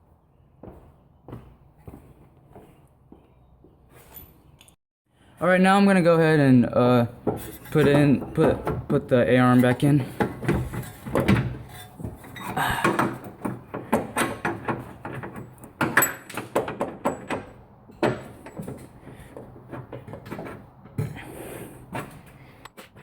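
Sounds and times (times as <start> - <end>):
metallic knocks and clanks: 7.2 - 21.2.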